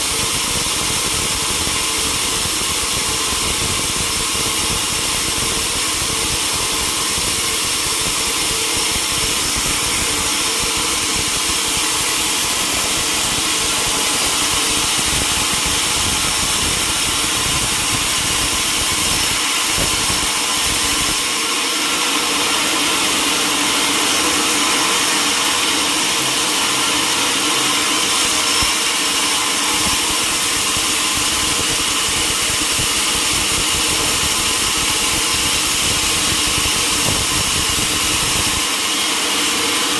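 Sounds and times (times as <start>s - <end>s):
sawmill machinery running: 0.0s - 39.9s.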